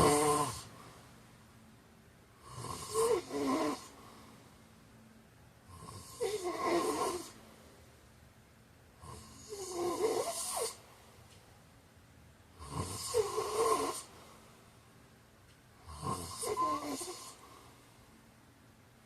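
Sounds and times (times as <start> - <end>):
man snoring: 0.0 - 0.7, 2.4 - 4.0, 5.7 - 7.4, 9.0 - 10.8, 12.6 - 14.1, 15.8 - 17.4
quiet breathing: 0.0 - 1.6, 2.3 - 8.0, 12.7 - 18.5.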